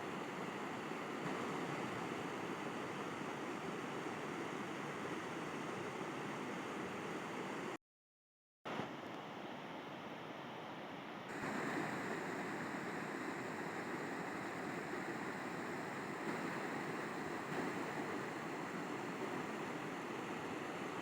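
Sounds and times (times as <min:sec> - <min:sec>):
river water rushing: 0:11.3 - 0:21.0.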